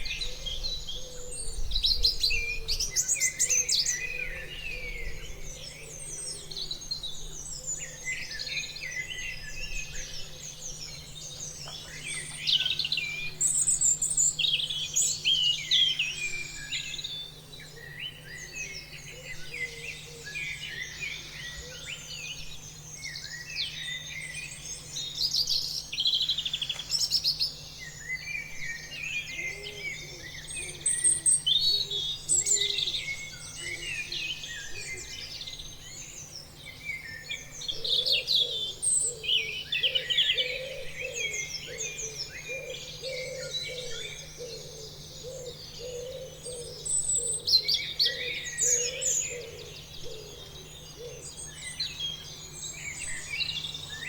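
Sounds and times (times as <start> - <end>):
faint steady hum: 0.0 - 54.0
songbirds chirping: 0.0 - 54.0.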